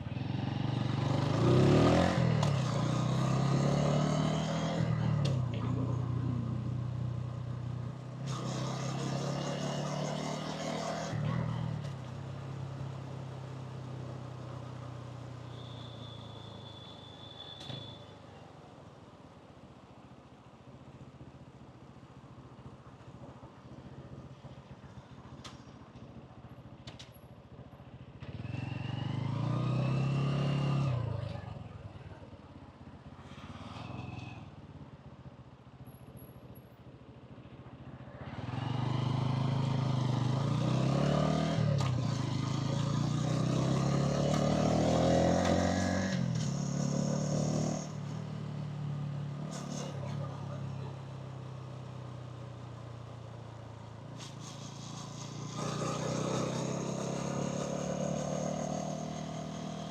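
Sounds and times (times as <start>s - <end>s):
motorcycle engine accelerating: 0.0s - 6.6s, 38.2s - 51.5s, 52.2s - 59.9s.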